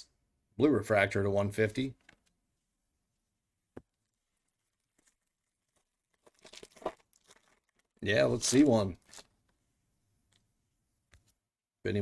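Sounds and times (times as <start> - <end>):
foil wrapper tearing open: 6.1 - 9.3.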